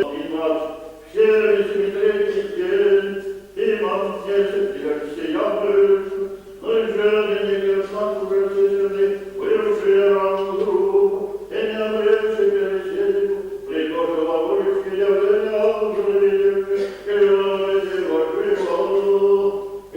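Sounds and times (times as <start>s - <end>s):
voices chanting: 0.0s - 0.5s.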